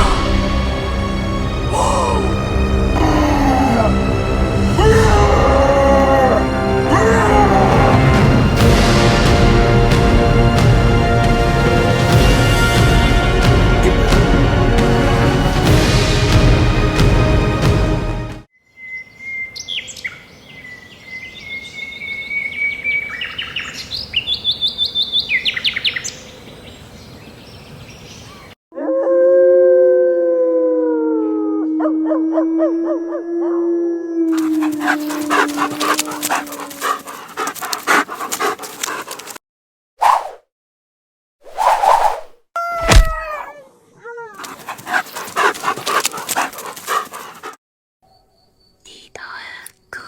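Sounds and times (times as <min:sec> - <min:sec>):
animal howling: 0:01.7 - 0:02.4, 0:03.0 - 0:04.1, 0:28.8 - 0:39.4, 0:42.8 - 0:47.6
animal whining and trilled calls: 0:34.3 - 0:39.4, 0:44.4 - 0:47.6
harsh rasping animal noise: 0:34.3 - 0:39.4, 0:44.4 - 0:47.6.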